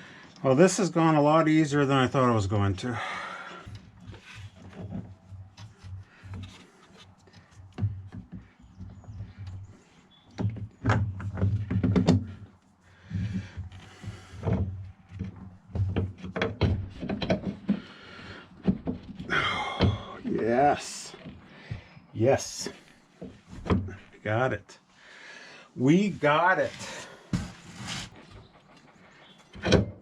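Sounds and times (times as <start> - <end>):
metal parts and tools clunking: 10.3 - 18.0.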